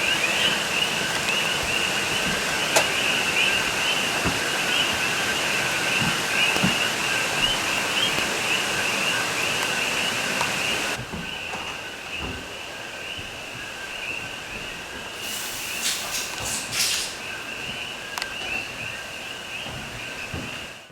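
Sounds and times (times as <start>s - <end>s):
frog chorus: 0.0s - 20.9s
high hiss: 15.1s - 17.4s.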